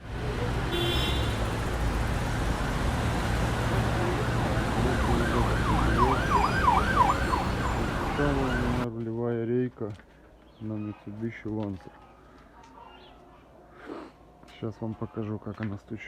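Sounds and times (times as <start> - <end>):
road traffic hum: 0.0 - 8.9
siren yelping: 3.8 - 8.8.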